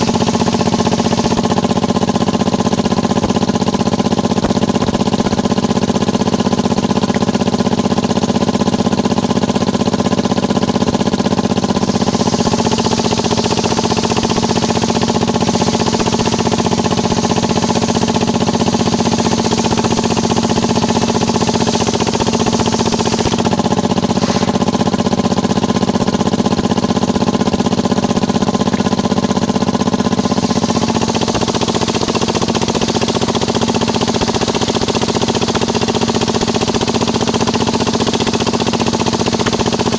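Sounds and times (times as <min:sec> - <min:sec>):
saw bench engine running: 0:00.0 - 0:39.9
saw blade cutting wood: 0:11.6 - 0:24.9, 0:29.9 - 0:33.1.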